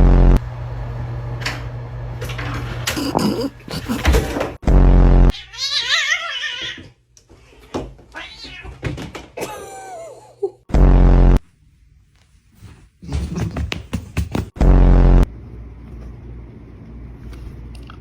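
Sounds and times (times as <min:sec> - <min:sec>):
cat meowing: 0:05.3 - 0:06.9.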